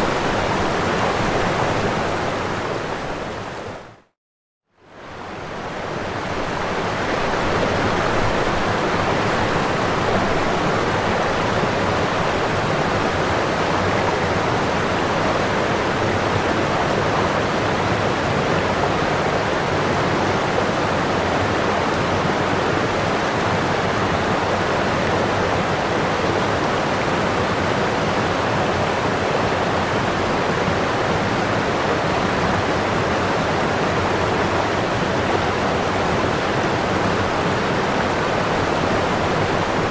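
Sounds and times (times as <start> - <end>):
waterfall roaring: 32.1 - 39.9.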